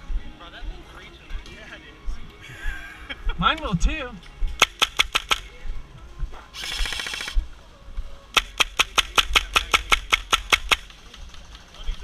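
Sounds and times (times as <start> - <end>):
airsoft guns firing: 4.6 - 5.5, 6.6 - 7.4, 8.3 - 11.8.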